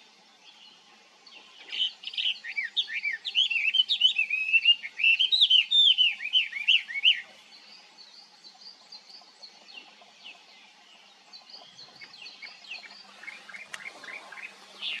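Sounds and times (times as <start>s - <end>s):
faint high bird chirps: 0.7s - 15.0s
bird singing whistled notes: 1.5s - 9.0s.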